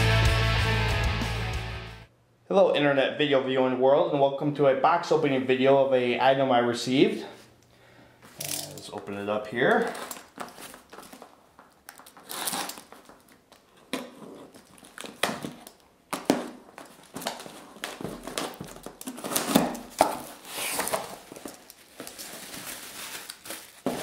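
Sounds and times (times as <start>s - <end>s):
packaging rustling and crinkling: 9.6s - 24.0s.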